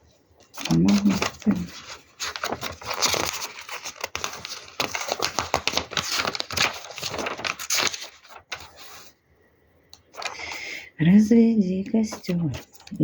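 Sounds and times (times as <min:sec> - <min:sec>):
cards clicking and rustling: 0:00.5 - 0:08.8.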